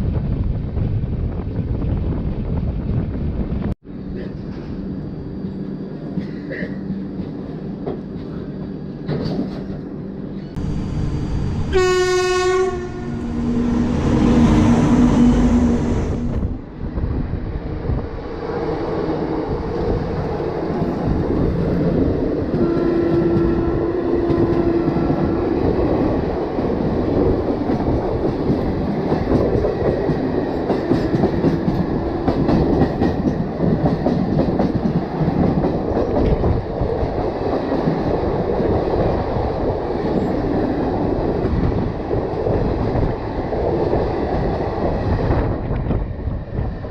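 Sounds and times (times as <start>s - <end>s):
train wheels clickety-clack: 5.4s - 9.8s, 19.8s - 39.2s
loud rushing noise: 10.6s - 11.8s, 12.8s - 22.4s
train horn: 11.7s - 16.5s, 22.5s - 25.6s.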